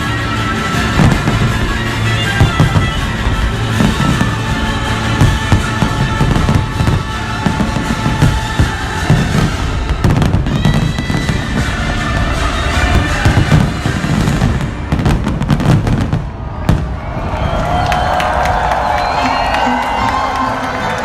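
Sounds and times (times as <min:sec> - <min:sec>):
music with sustained tones: 0:00.0 - 0:16.1
fireworks bangs and crackling: 0:00.0 - 0:18.4.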